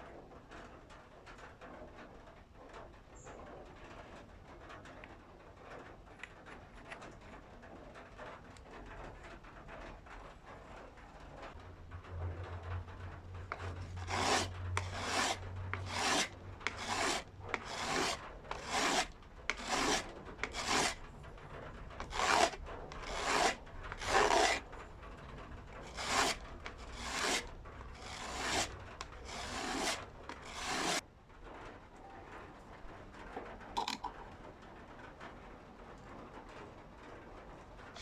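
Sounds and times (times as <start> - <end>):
hand file rasping: 13.5 - 21.0, 22.0 - 24.6, 25.8 - 31.0.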